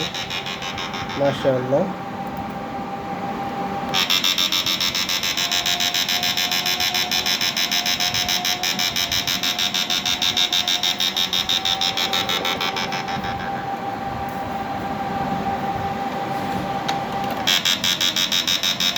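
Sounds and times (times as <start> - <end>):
steady electric whine: 0.0 - 18.9
rapid pulsing electric buzz: 4.0 - 14.2.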